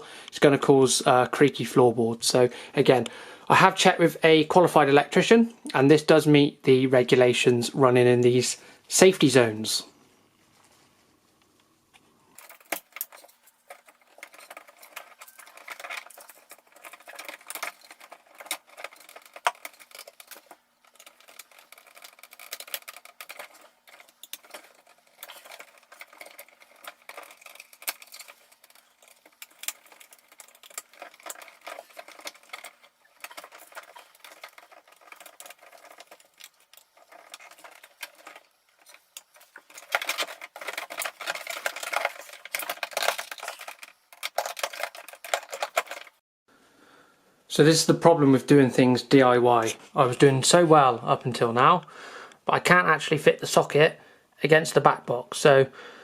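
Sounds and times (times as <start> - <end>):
hands handling cables and screws: 11.4 - 46.2.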